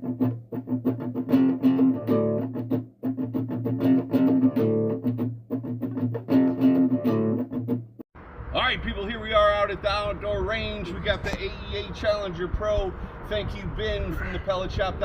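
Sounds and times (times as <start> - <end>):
guitar music: 0.0 - 8.0.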